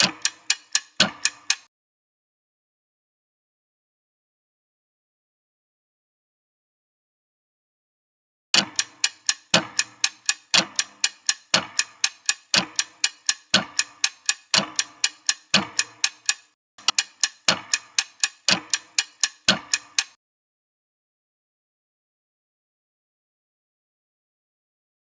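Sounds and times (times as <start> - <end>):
clock ticking: 0.0 - 1.7, 8.6 - 20.2.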